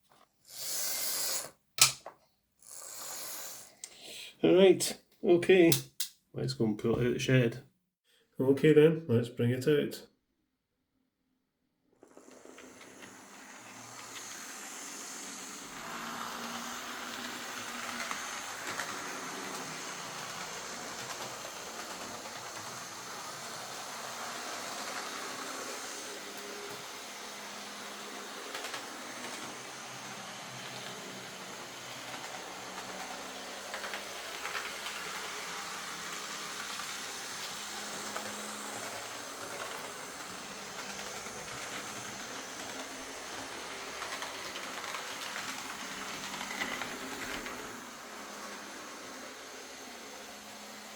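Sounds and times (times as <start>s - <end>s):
faint hiss: 0.4s - 1.6s
wheels rolling on rails: 11.9s - 50.9s
model locomotive motor whirring: 12.0s - 50.9s.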